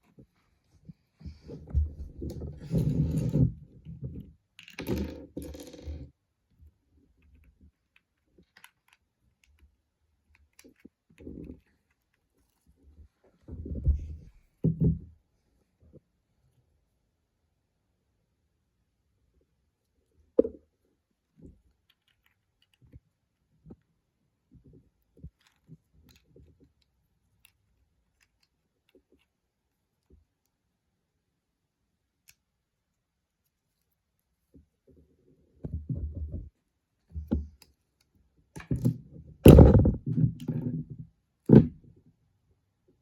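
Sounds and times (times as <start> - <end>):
plastic parts clicking and rattling: 7.2 - 9.7.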